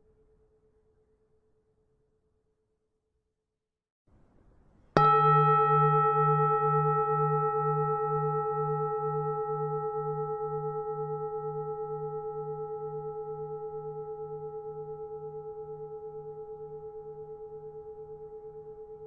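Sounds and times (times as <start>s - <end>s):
large bronze bell ringing: 5.0s - 11.2s.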